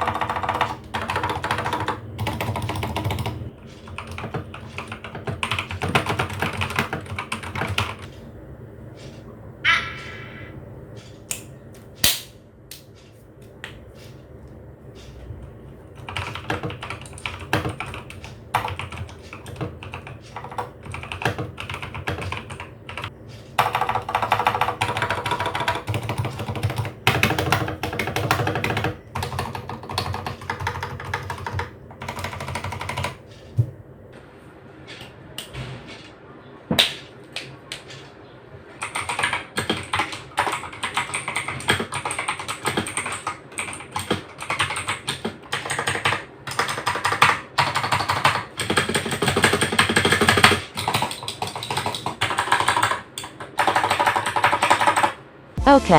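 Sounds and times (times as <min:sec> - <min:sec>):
clicky mechanical keyboard typing: 0:00.0 - 0:08.1, 0:16.0 - 0:33.2, 0:38.8 - 0:55.2.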